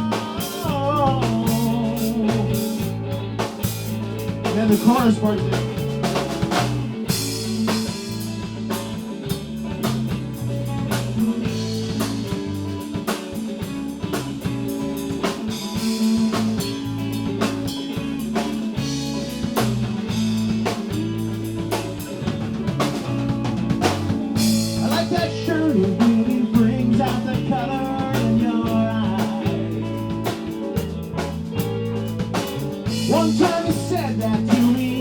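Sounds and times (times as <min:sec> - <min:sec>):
band playing instrumental: 0:00.0 - 0:35.0
drum kit beat: 0:00.0 - 0:35.0.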